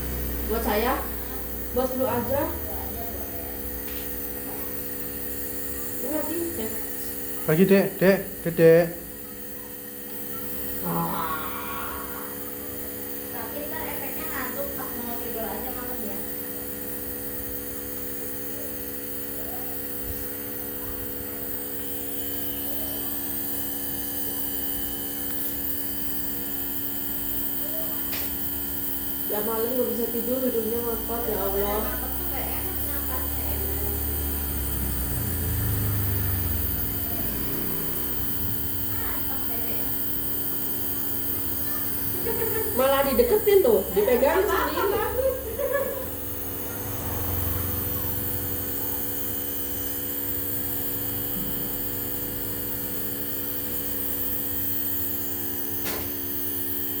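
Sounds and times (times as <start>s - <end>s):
steady electric hum: 0.0s - 57.0s
child whining: 10.3s - 12.6s.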